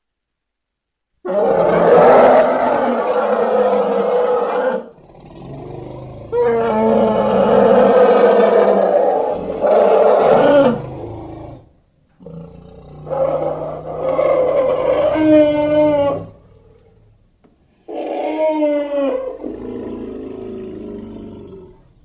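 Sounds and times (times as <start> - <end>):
elephant roaring: 1.3 - 17.2, 17.8 - 22.0.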